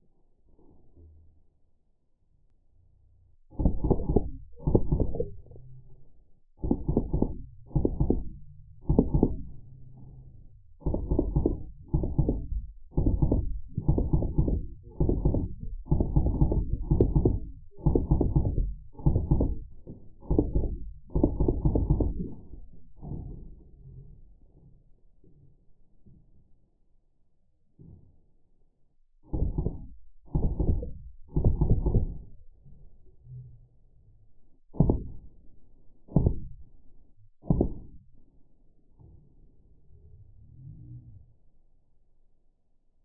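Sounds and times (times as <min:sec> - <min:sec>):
slowed gun bursts rattling: 0:03.5 - 0:05.4, 0:06.6 - 0:09.6, 0:10.8 - 0:22.7, 0:29.4 - 0:32.4.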